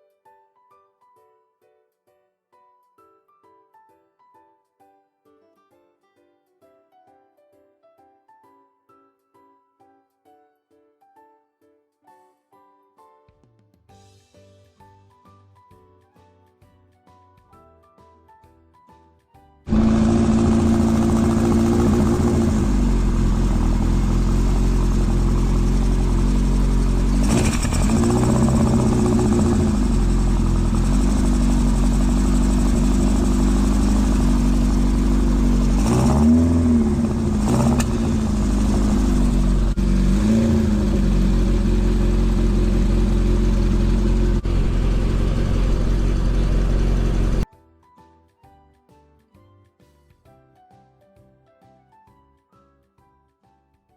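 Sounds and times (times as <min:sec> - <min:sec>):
engine revving with throttle blips: 0:19.7 - 0:47.4
motorcycle engine idling: 0:19.7 - 0:47.4.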